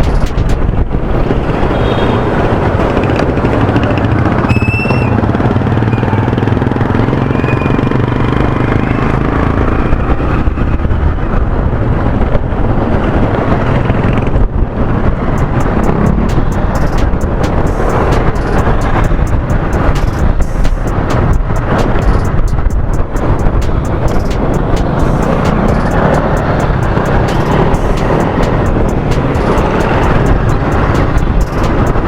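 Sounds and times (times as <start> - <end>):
road and wind noise: 0.0 - 32.0
motorcycle engine running: 1.8 - 10.7, 13.6 - 32.0
high-pitched beep: 4.5 - 5.2.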